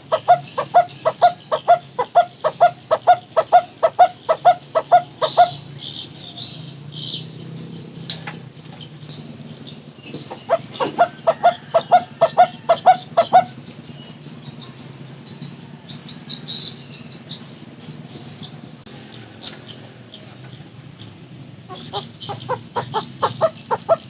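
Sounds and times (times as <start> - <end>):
barbet calling repeated notes: 0.0 - 7.2, 9.1 - 14.4, 21.6 - 24.0.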